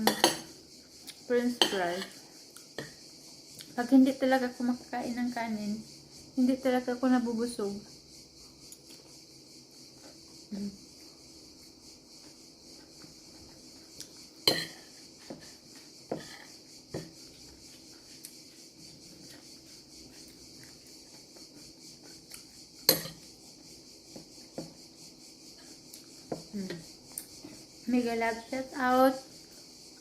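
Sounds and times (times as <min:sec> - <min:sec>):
cutlery clinking on a plate: 0:00.0 - 0:00.5, 0:14.5 - 0:14.9, 0:22.9 - 0:23.2
steady high-pitched hiss: 0:00.0 - 0:30.0.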